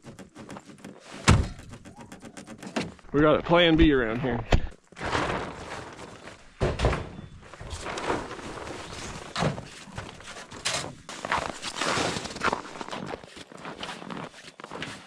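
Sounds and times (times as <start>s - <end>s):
gear thunking and scuffing: 4.8s - 15.0s
footsteps: 7.4s - 15.0s.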